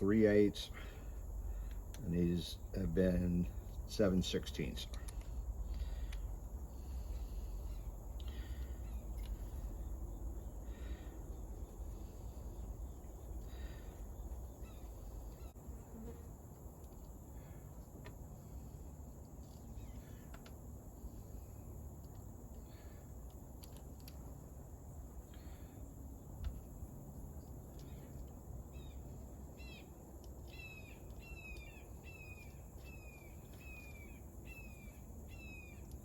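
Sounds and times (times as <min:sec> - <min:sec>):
high insect drone: 0:00.0 - 0:23.3.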